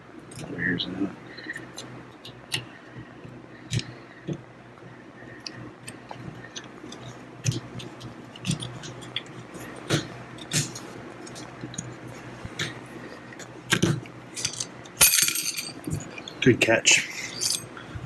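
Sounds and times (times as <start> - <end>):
metal parts and tools clicking: 14.4 - 16.3, 17.2 - 17.8.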